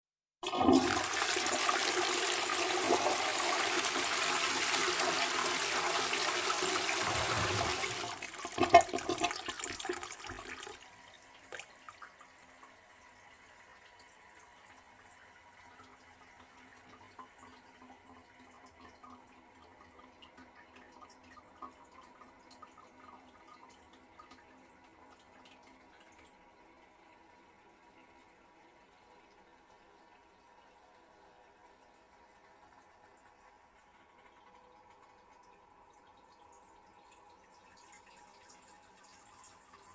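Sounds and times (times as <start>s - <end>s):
toilet flushing: 0.4s - 20.2s
water trickling: 6.0s - 12.7s.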